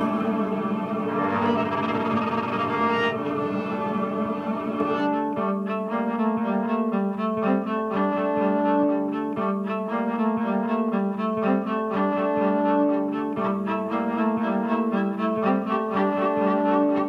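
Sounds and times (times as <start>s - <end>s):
cello playing: 0.0s - 17.0s.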